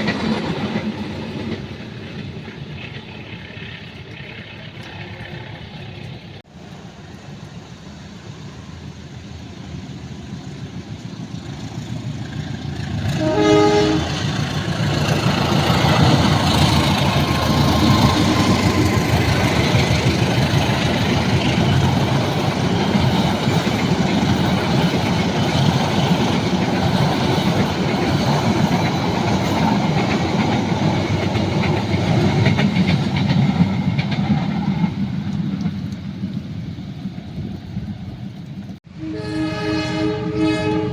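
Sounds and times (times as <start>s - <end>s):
train engine and wheel noise: 0.0s - 40.9s
train horn blast: 13.1s - 14.4s, 38.9s - 40.9s.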